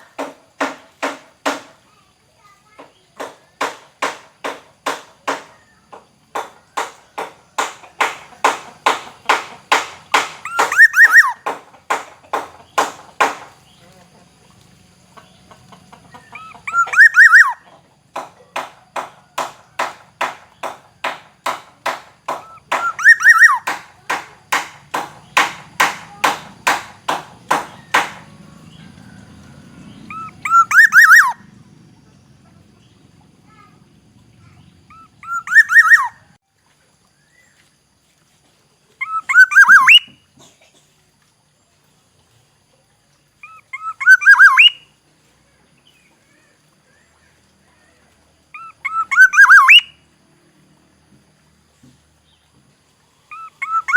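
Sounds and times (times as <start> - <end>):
bird harsh notes: 8.4 - 12.0, 16.3 - 17.6, 22.3 - 26.9, 30.1 - 31.5, 34.9 - 36.3, 39.0 - 40.1, 43.5 - 44.8, 48.6 - 49.9, 53.3 - 53.9
bird fluty whistled phrases: 10.4 - 11.4, 16.4 - 17.6, 22.4 - 23.7, 30.1 - 31.5, 34.5 - 36.3, 39.0 - 40.2, 43.4 - 44.9, 48.6 - 50.0, 53.3 - 53.9.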